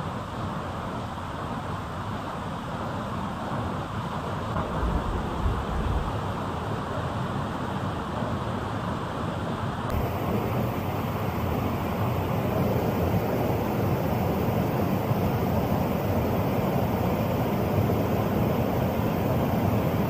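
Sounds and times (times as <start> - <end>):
waterfall roaring: 4.3 - 8.3, 9.9 - 20.0
wind buffeting microphone: 4.6 - 6.4.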